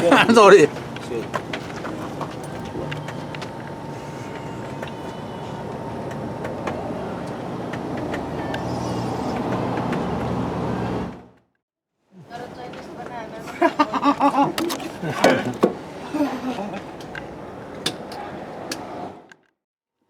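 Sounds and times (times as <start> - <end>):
diesel engine running: 0.0 - 11.4.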